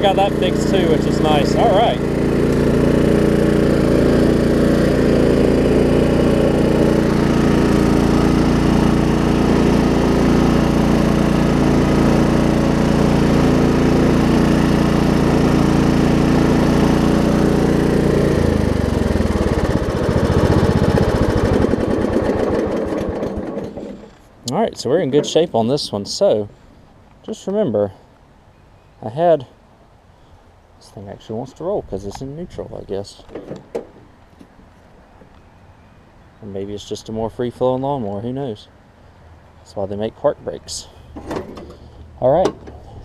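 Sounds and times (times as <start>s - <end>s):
riding mower engine running: 0.0s - 28.3s, 31.2s - 43.0s.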